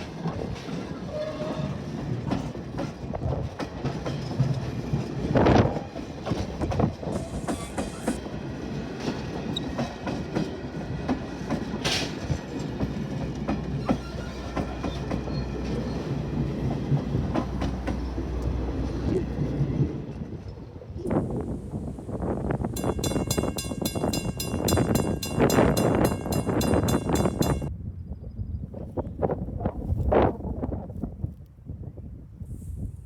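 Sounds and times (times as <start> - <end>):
railroad cars rumbling: 0.0 - 27.8
wheels clacking over rail joints: 8.8 - 20.2, 22.7 - 27.7.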